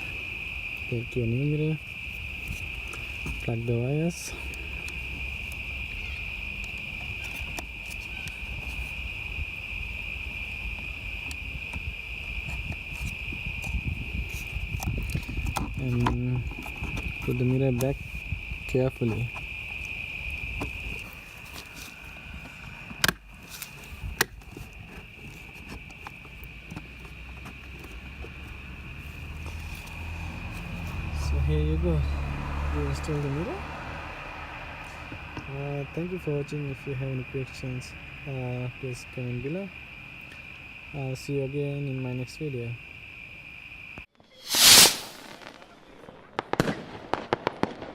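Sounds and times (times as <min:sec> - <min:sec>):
high-pitched insect chorus: 0:00.0 - 0:47.9
handling ticks: 0:01.8 - 0:09.0.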